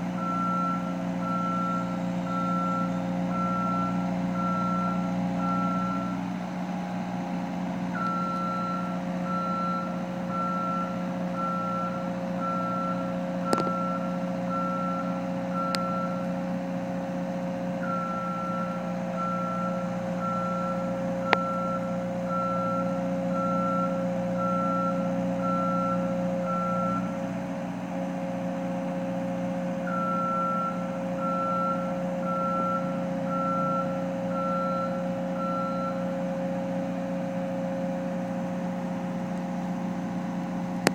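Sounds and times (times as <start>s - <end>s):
engine droning: 0.0s - 40.9s
reversing alarm beeping: 0.1s - 6.4s, 7.9s - 16.5s, 17.6s - 27.2s, 29.7s - 37.1s.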